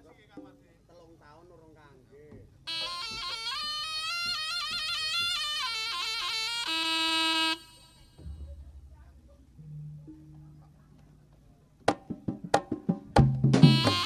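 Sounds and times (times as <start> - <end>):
reedy wind instrument melody: 2.7 - 8.7, 13.5 - 14.0
low drum beats: 8.1 - 11.0.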